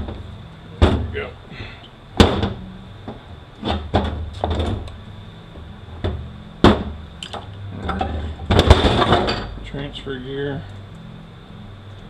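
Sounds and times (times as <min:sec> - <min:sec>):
low steady hum: 0:00.0 - 0:12.0
metal parts knocking and clanking: 0:07.8 - 0:09.6.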